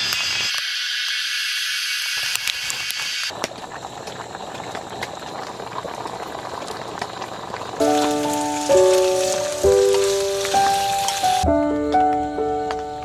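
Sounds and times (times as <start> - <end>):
cicadas chorus: 0.0 - 11.4
heavy rain hiss: 2.3 - 11.4
raindrop ticks: 3.3 - 11.4.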